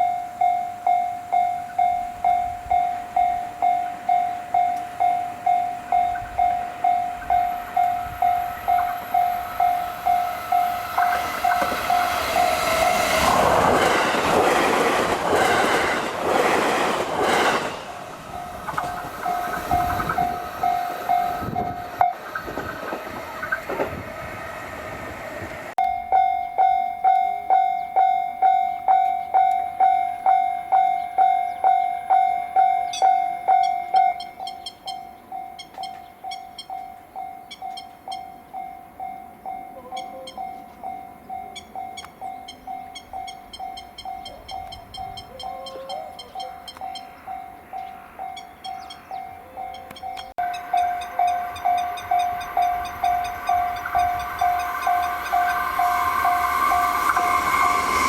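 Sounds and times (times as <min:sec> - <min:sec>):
level crossing bell ringing: 0:00.0 - 0:13.3, 0:18.3 - 0:22.3, 0:25.8 - 0:57.2
train passing at high speed: 0:00.0 - 0:26.8, 0:40.8 - 0:58.0.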